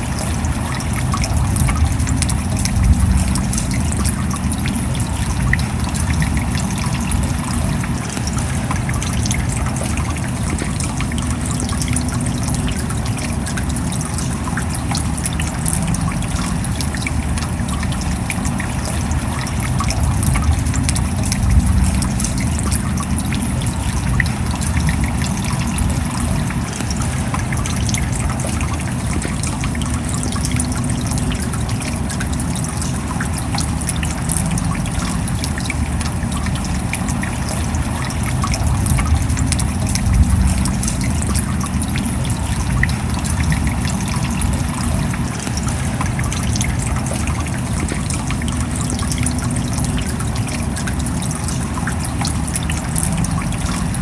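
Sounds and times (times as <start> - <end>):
low rushing noise: 0.0 - 12.6
rain pattering: 0.0 - 54.0.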